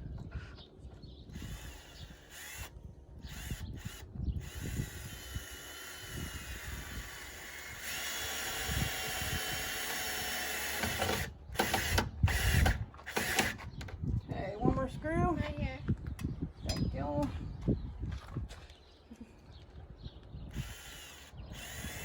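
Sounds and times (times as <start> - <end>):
power drill driving screws: 1.3 - 13.9, 20.5 - 22.0.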